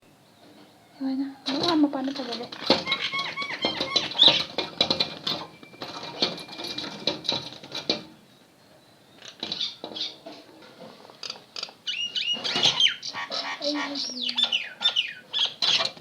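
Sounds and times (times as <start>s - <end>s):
birds chirping: 0.0s - 16.0s
bird squawks: 2.6s - 4.5s, 11.9s - 15.9s.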